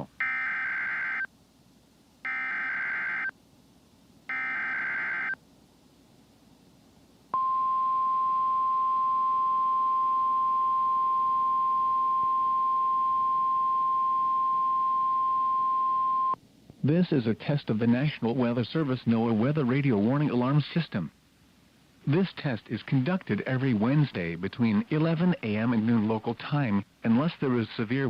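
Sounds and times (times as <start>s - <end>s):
steady alarm tone: 0.2s - 1.3s, 2.3s - 3.3s, 4.3s - 5.4s.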